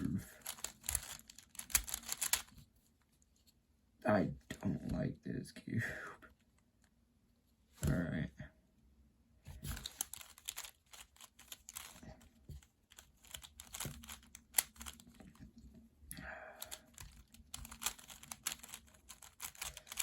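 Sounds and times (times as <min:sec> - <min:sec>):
puzzle cube plastic clicks: 0:00.3 - 0:02.6, 0:09.7 - 0:15.4, 0:16.6 - 0:20.0.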